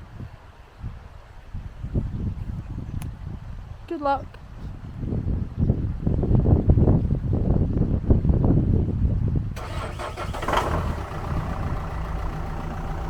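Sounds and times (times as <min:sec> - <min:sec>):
engine cranking and idling: 0:09.6 - 0:13.0.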